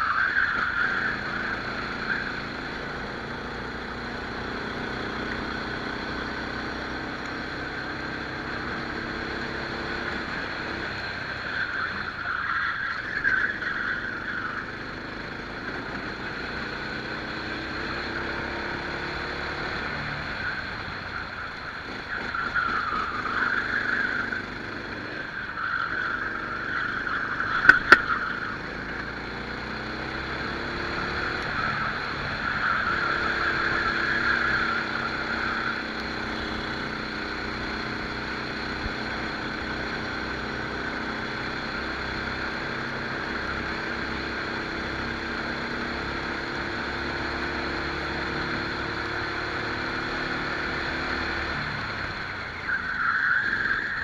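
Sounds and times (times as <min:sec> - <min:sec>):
kart engine racing: 0:00.0 - 0:54.0
sharp clicks: 0:27.6 - 0:28.5.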